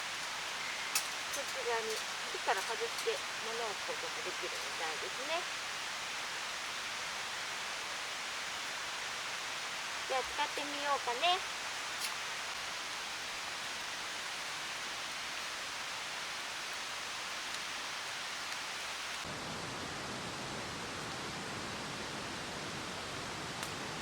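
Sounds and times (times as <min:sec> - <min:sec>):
rushing outdoor background noise: 0:00.0 - 0:24.0
faint ticks: 0:17.5 - 0:17.7.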